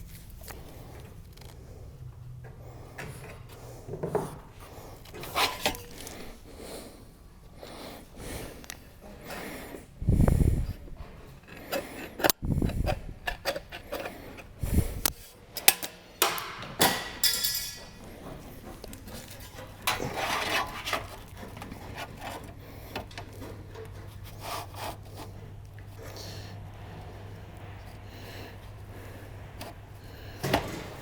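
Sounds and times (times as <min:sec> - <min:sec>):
sheet metal knocking and scraping: 0:16.2 - 0:24.4
low steady hum: 0:17.3 - 0:31.0
hissing scrape: 0:23.4 - 0:31.0.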